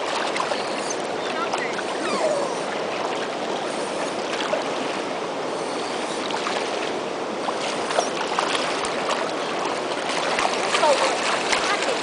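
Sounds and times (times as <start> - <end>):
waterfall roaring: 0.0 - 3.3.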